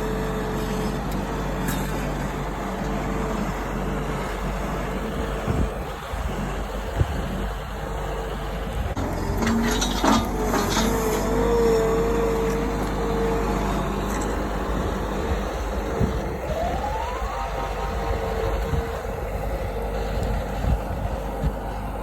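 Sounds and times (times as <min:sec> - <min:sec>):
heavy machine engine whine: 0:00.0 - 0:22.0
whine rising in pitch: 0:15.2 - 0:20.3.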